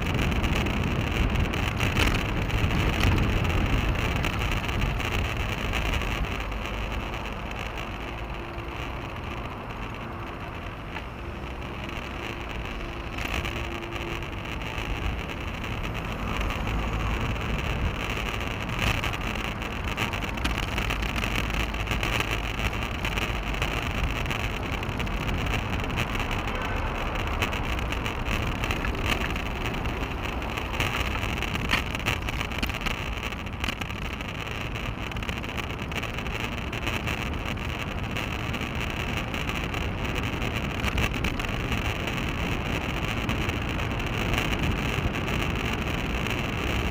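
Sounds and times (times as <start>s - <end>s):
bicycle tyres rumbling on path: 0.0s - 46.9s
wind noise on microphone: 0.0s - 46.9s.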